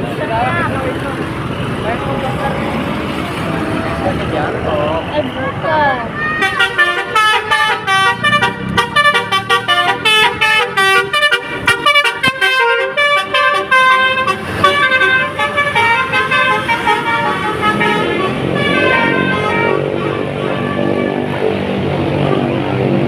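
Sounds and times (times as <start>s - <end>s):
vehicle noise: 0.0s - 23.0s
bus horn playing a melody: 6.2s - 23.0s.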